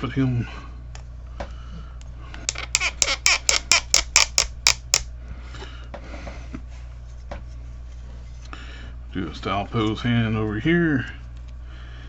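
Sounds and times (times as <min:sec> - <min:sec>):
sharp plastic clicks: 0:02.4 - 0:05.1.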